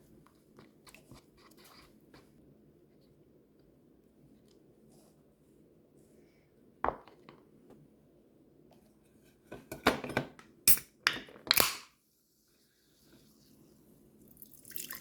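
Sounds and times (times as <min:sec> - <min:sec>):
dishes knocking and clinking: 0:06.9 - 0:07.4.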